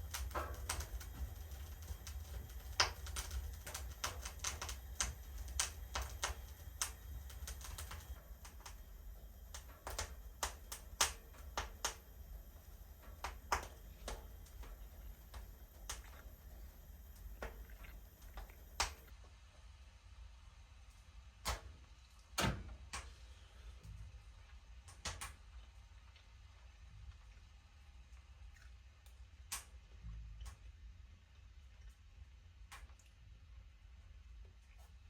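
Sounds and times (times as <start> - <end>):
sharp clicks and snaps: 0.1 - 8.8, 9.5 - 12.2, 13.0 - 16.3, 18.2 - 19.1, 28.6 - 29.7.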